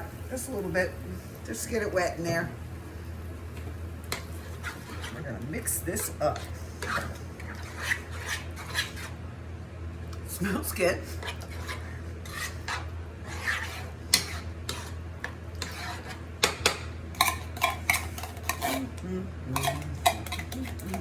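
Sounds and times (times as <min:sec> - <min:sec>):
utensil scraping and clinking pan: 0:17.2 - 0:19.0, 0:19.6 - 0:21.0.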